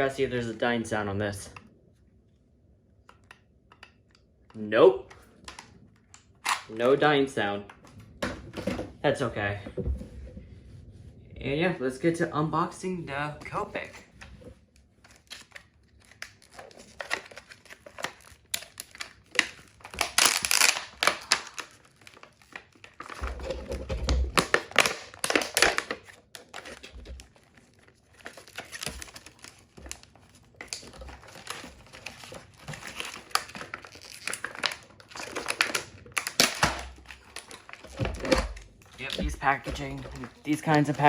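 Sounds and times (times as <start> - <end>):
packaging crinkling and tearing: 15.0 - 41.0.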